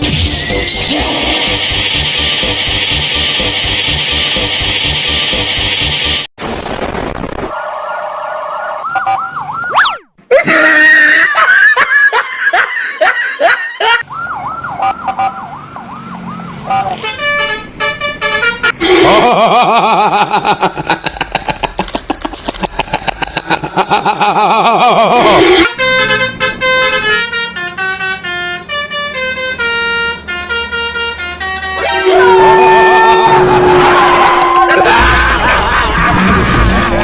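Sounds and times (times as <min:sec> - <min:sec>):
multi-tone bus air horns: 0:01.4 - 0:06.0, 0:16.6 - 0:19.0, 0:25.4 - 0:35.6.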